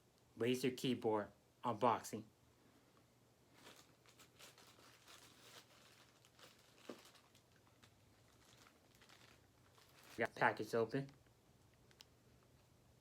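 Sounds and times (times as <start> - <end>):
packaging crinkling and tearing: 3.5 - 12.1.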